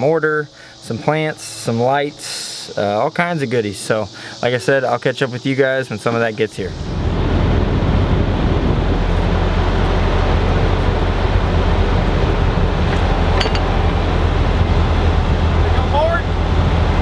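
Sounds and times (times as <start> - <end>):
heavy equipment engine running: 6.7 - 17.0.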